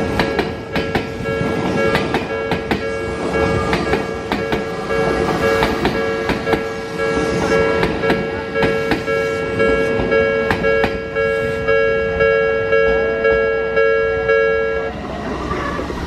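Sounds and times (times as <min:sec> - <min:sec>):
train wheels clacking on rail joints: 0:00.0 - 0:11.2
level crossing bell two-tone ding: 0:04.4 - 0:14.9.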